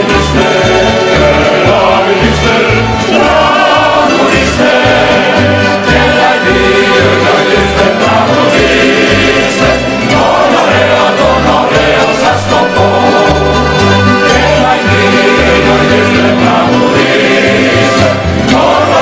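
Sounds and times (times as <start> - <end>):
plucked strings: 0.0 - 19.0
voices singing in harmony: 0.0 - 19.0.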